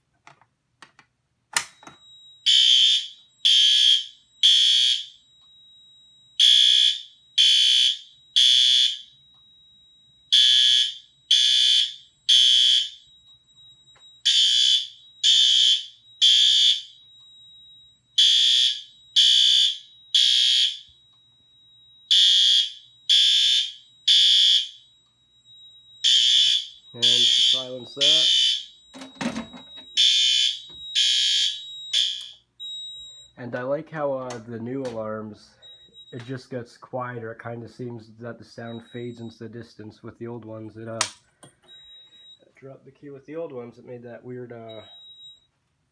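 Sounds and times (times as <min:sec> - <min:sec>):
fire alarm horn blasts: 0:01.6 - 0:33.4, 0:35.4 - 0:37.2, 0:44.5 - 0:45.5
faint steady high tone: 0:12.9 - 0:30.9, 0:31.8 - 0:45.6.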